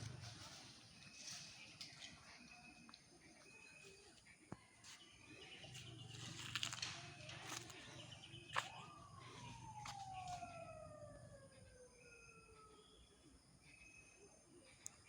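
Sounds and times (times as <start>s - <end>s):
faint siren winding down: 6.6s - 14.6s.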